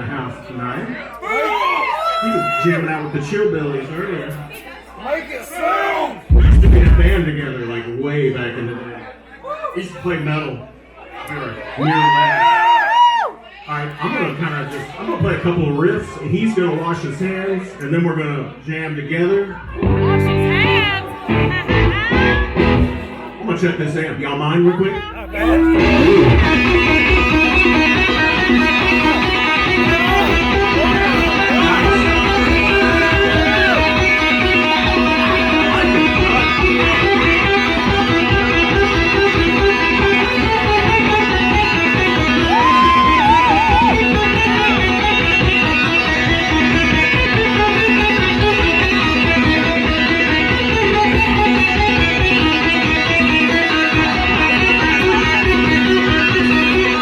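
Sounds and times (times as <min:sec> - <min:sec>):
overdriven electric guitar riffs: 0:19.8 - 0:23.4, 0:25.2 - 0:57.0.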